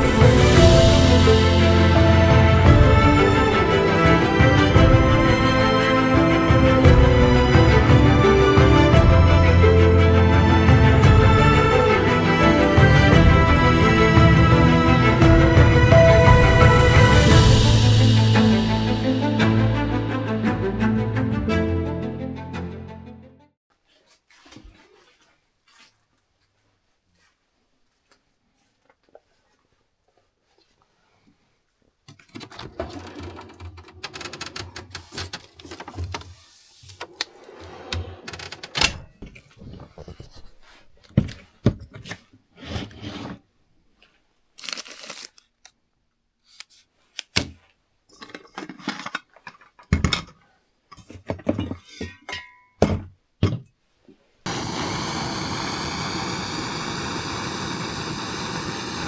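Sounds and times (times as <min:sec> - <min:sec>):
objects knocking and scraping: 0:48.1 - 0:53.7.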